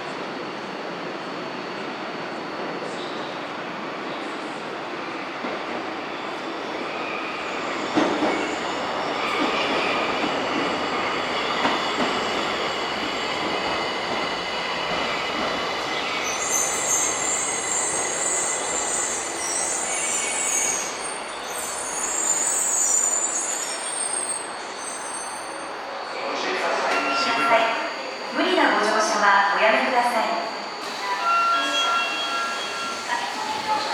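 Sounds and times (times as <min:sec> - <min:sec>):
subway train wheels on rails: 0:00.0 - 0:33.9
high-pitched wheel squeal: 0:30.8 - 0:33.9.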